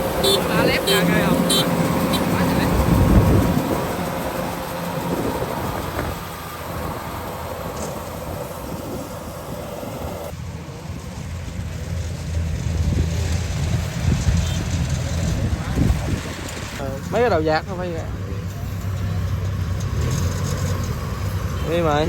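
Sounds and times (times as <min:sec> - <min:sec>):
wind rumbling on microphone: 0:00.0 - 0:21.6
combine harvester engine running: 0:00.0 - 0:22.0.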